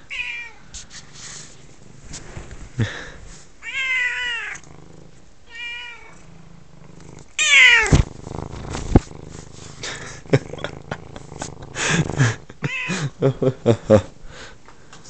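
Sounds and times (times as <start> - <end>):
cat meowing: 0.1 - 0.6, 3.6 - 4.6, 5.5 - 6.2, 7.4 - 8.0.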